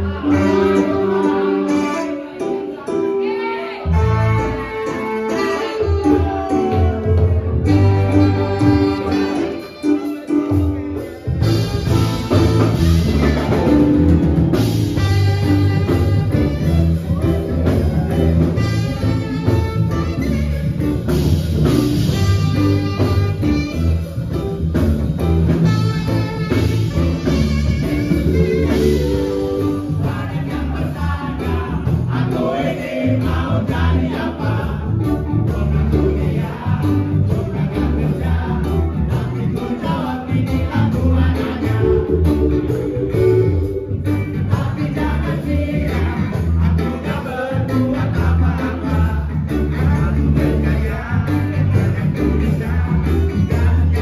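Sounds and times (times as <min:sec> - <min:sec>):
person singing: 0:00.0 - 0:14.3
music with bass line: 0:03.9 - 0:54.0.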